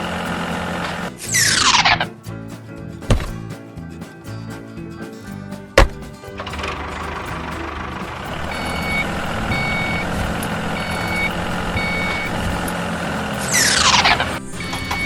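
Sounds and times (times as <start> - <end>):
steady motor hum: 6.4 - 15.0
vehicle reversing alarm beeping: 6.5 - 15.0.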